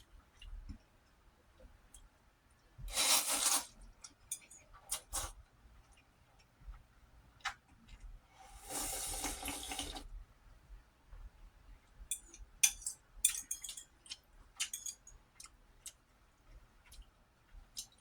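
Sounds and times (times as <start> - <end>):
person slurping noodles: 2.9 - 3.7, 8.5 - 10.0.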